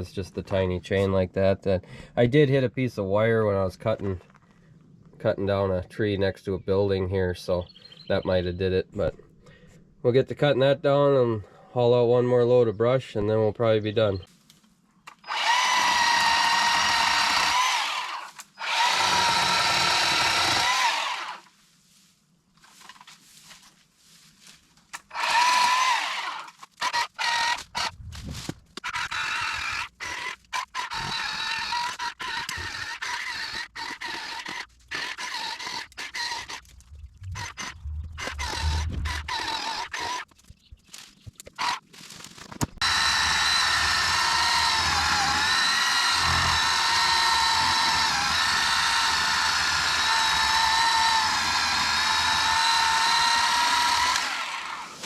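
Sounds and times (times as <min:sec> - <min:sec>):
electric chainsaw motor whining: 0:15.1 - 0:21.4, 0:25.1 - 0:27.9, 0:28.8 - 0:36.8, 0:37.4 - 0:40.3, 0:42.8 - 0:55.0.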